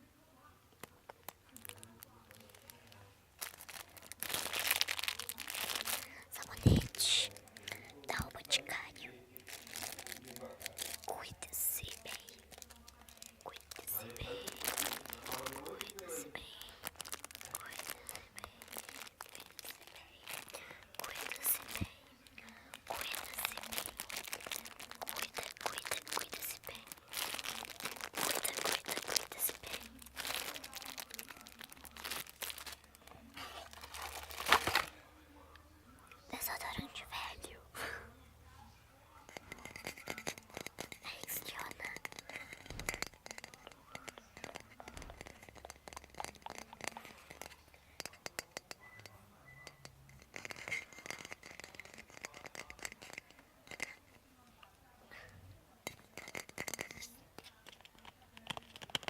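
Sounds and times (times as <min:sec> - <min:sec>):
crinkling and crumpling: 0:00.7 - 0:35.6, 0:39.3 - 0:48.8, 0:49.7 - 0:59.0
tapping on small hard objects: 0:55.9 - 0:59.0.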